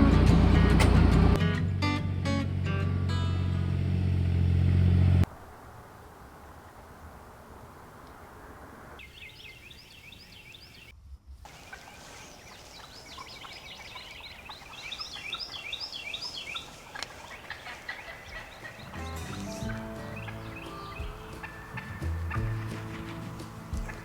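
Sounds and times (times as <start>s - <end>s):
turkey gobbling: 11.5s - 24.0s.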